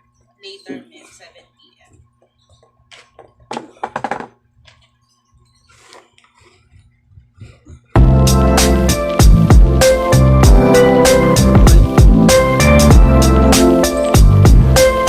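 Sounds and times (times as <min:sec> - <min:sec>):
loud music: 0:08.0 - 0:15.0.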